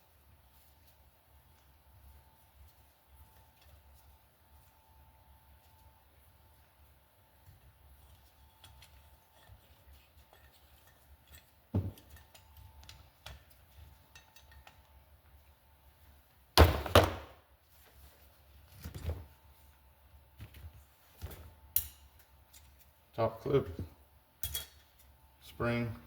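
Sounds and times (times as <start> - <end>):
metal tools clinking on workbench: 24.4 - 25.1.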